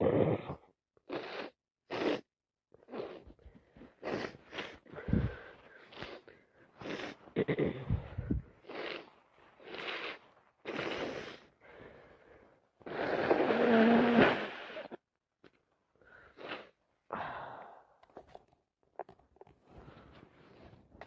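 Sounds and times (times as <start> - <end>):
wheezy breath: 2.8 - 15.0
person breathing noisily: 3.4 - 15.0, 16.0 - 18.0.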